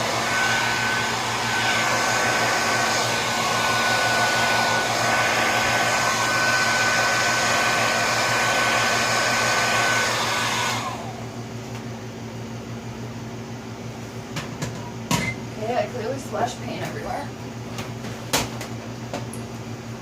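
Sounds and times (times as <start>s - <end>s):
hair dryer blowing: 0.0s - 11.9s.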